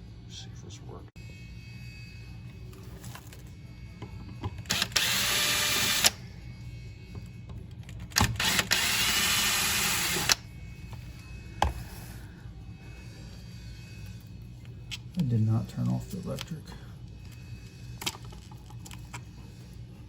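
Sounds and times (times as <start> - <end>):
power drill driving screws: 4.7 - 6.2, 8.2 - 10.4.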